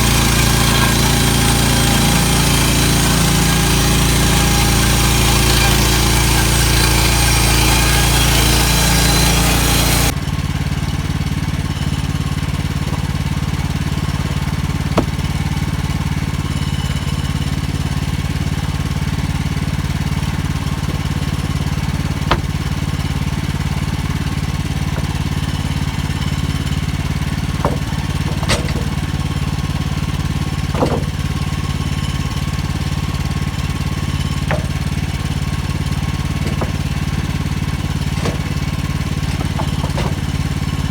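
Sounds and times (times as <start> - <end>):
sharp knocks: 0.0 - 10.1, 14.3 - 15.8, 20.8 - 29.5, 30.1 - 32.0, 34.3 - 40.9
bandsaw mill engine running: 0.0 - 40.9.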